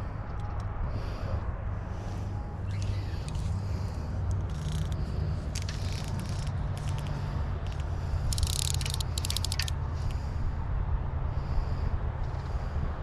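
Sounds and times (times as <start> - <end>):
wind: 0.0 - 13.0
crackling clicks: 4.2 - 9.8.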